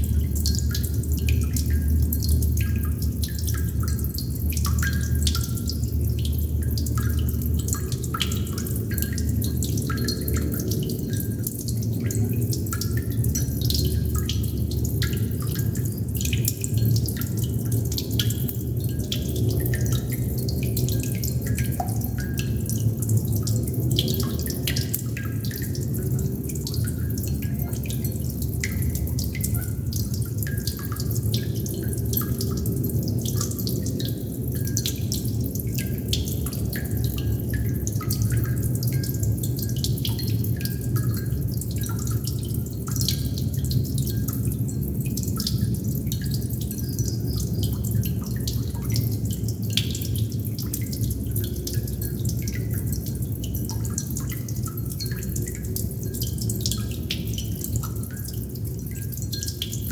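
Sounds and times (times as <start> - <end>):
steady low rumble: 0.0 - 39.8
water droplets dripping: 0.0 - 59.9.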